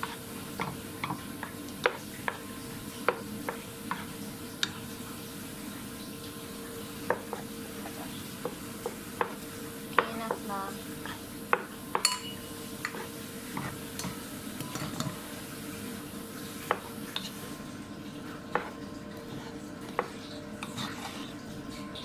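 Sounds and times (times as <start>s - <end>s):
food sizzling: 0.0s - 22.0s
metal utensil knocking on pan: 11.6s - 12.4s.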